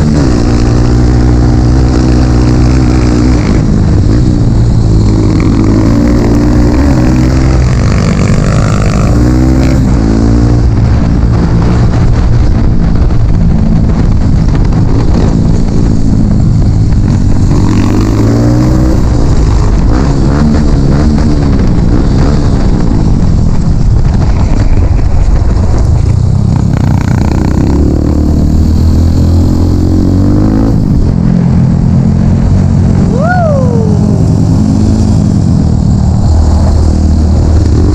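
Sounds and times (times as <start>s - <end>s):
dirt bike engine revving: 0.0s - 10.9s.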